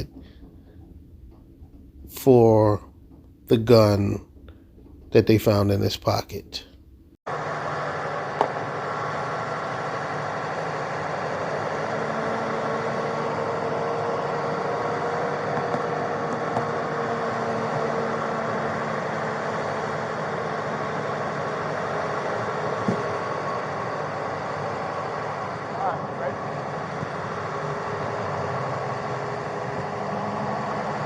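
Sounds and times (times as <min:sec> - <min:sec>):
vehicle engine idling: 0:07.3 - 0:31.0.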